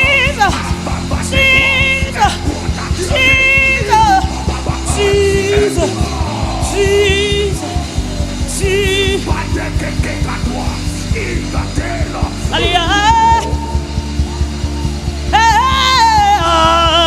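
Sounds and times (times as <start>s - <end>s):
worship music with steady beat: 0.0s - 17.0s.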